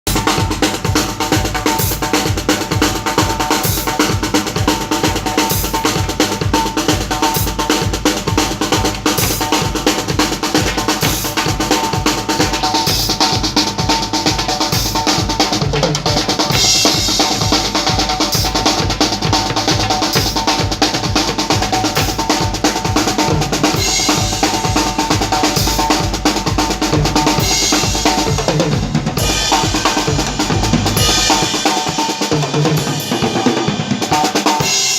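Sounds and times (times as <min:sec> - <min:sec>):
bass drum beat: 0:00.0 - 0:34.4
cymbal washes: 0:05.4 - 0:22.9, 0:23.7 - 0:34.1.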